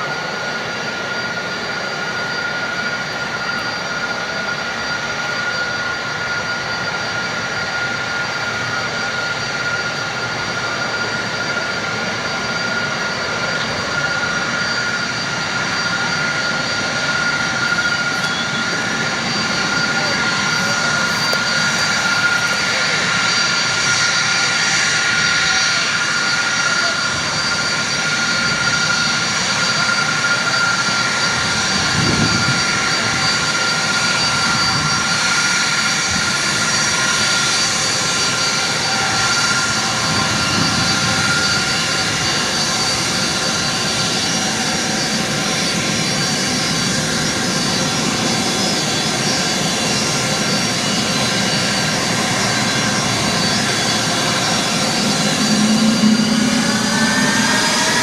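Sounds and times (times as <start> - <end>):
jet engines whining: 0.0 - 58.0.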